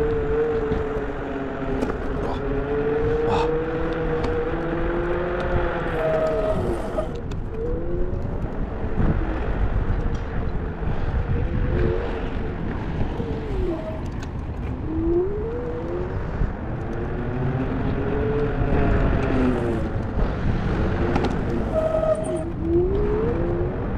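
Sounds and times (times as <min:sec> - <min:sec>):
car engine hum: 0:00.0 - 0:23.9
road rumble: 0:00.0 - 0:23.9.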